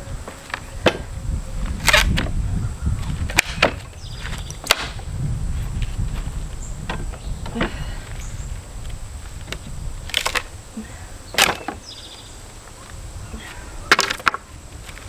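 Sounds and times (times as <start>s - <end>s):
wood cracking and nails pulling loose: 1.8s - 2.3s, 3.3s - 5.0s, 9.4s - 10.5s, 11.3s - 11.8s, 13.9s - 14.4s.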